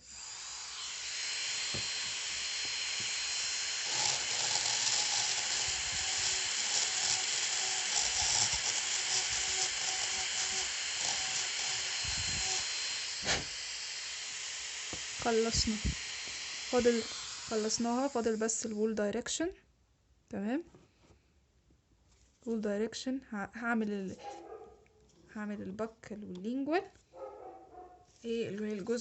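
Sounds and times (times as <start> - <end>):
dental drill whining: 0.0 - 18.9
dental drill click: 0.6 - 18.8.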